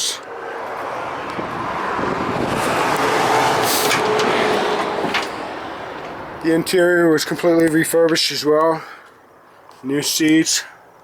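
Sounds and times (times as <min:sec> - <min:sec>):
road vehicle passing: 0:00.0 - 0:08.0.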